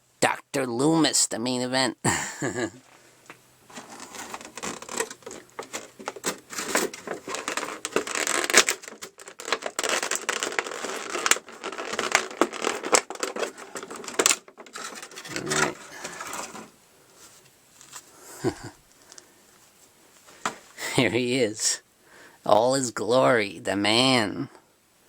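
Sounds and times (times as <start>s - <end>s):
plastic packaging crinkling: 3.7s - 16.8s.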